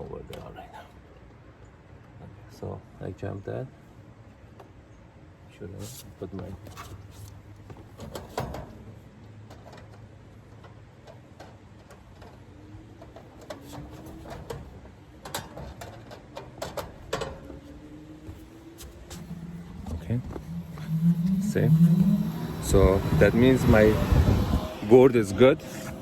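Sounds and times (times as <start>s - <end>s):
steady low hum: 17.2s - 26.0s
faint rising tone: 17.5s - 26.0s.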